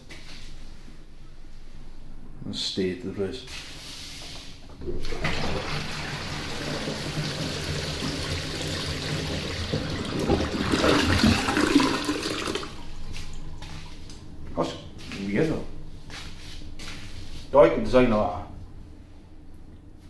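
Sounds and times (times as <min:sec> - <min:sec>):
toilet flushing water rushing: 0:04.8 - 0:13.7.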